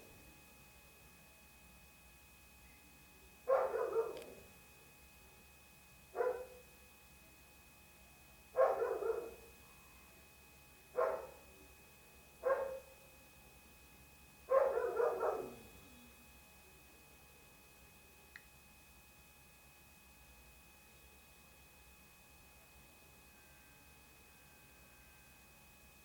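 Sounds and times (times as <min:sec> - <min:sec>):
dog barking: 0:03.5 - 0:04.5, 0:06.1 - 0:06.7, 0:08.6 - 0:09.5, 0:10.9 - 0:11.5, 0:12.4 - 0:13.0, 0:14.5 - 0:15.7.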